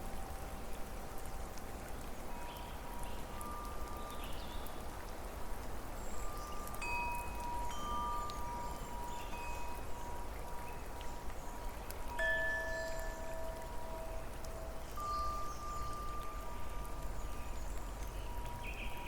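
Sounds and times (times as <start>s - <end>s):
wind chimes ringing: 6.3s - 10.9s, 12.1s - 17.6s.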